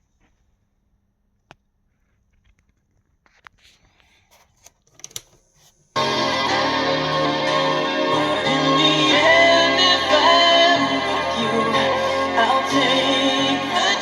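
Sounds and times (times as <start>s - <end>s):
keyboard music from radio: 6.0s - 14.0s.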